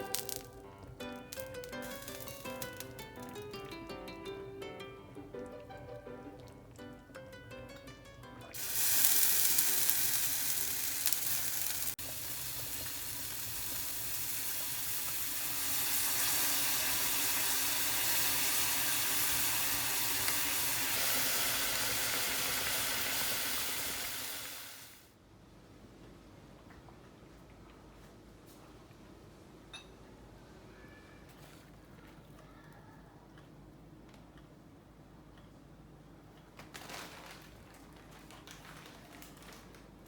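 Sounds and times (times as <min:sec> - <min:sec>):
food sizzling: 0:00.0 - 0:25.1.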